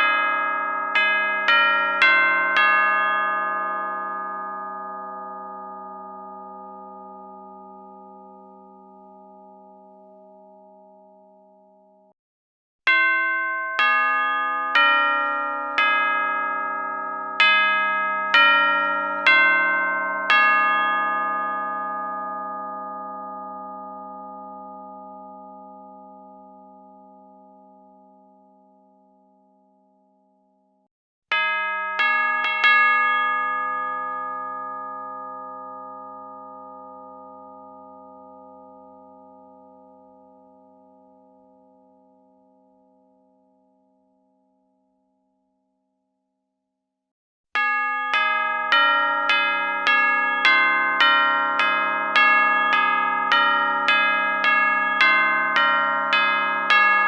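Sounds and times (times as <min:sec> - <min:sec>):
soft ringing tone: 0:21.7 - 0:30.8.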